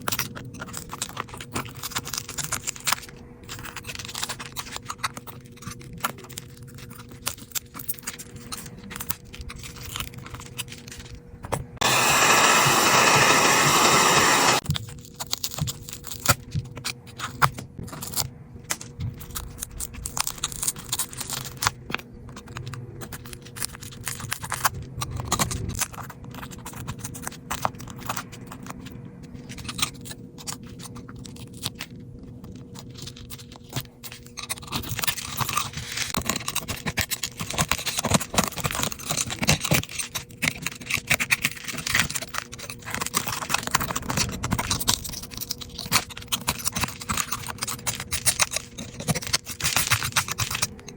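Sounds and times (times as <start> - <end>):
faint steady hum: 0.0 - 50.9
loud rushing hiss: 11.8 - 14.6
small tools clicking and tapping: 32.8 - 50.9.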